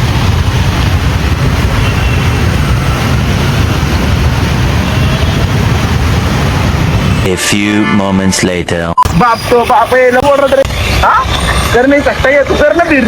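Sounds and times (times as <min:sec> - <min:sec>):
loud low rumbling: 0:00.0 - 0:07.4.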